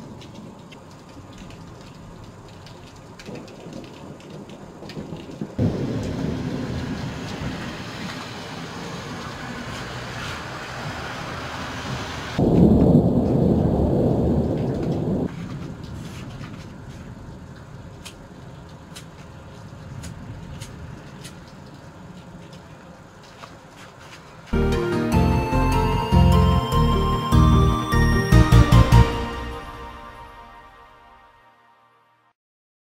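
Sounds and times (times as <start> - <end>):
heavy rain: 0.0 - 31.3
rumbling thunder: 1.2 - 9.9, 11.9 - 18.6.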